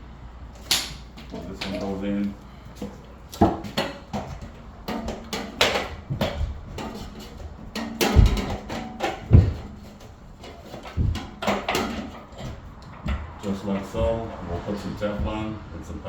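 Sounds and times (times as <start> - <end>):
rod knocking inside metal tank: 3.4 - 13.3
heavy deep thumps: 7.6 - 10.4, 11.0 - 11.5, 12.4 - 15.7.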